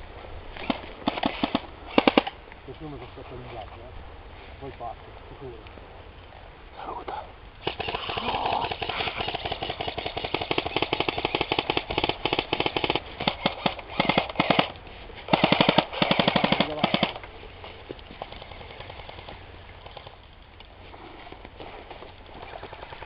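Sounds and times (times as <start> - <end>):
airsoft rifles firing full auto: 0.6 - 2.3, 7.6 - 17.2.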